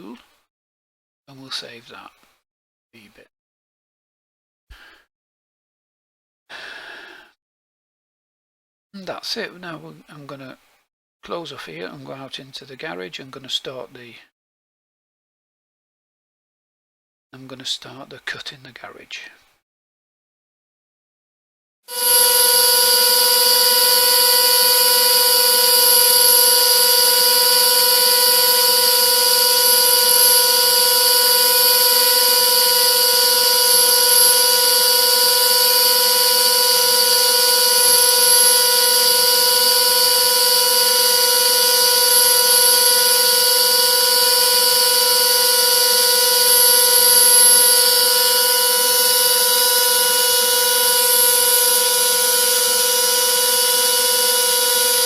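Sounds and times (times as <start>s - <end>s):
machine spindle whining: 21.9s - 55.0s.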